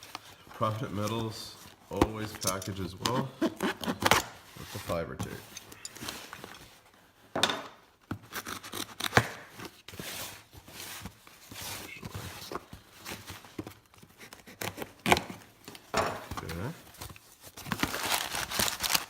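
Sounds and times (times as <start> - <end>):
tape cutting and cardboard scraping: 2.0 - 5.4, 8.1 - 12.7, 13.4 - 15.5.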